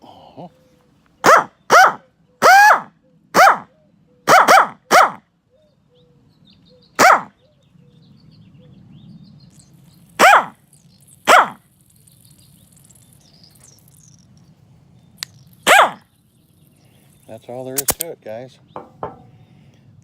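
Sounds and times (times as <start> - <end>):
dog barking: 1.2 - 5.2, 7.0 - 7.4, 10.2 - 10.6, 11.3 - 11.6, 15.7 - 16.0.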